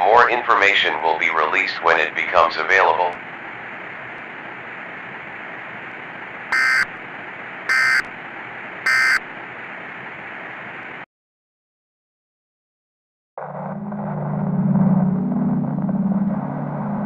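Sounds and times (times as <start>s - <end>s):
warbling two-tone data tones: 6.6s - 6.8s, 7.7s - 8.0s, 8.9s - 9.2s.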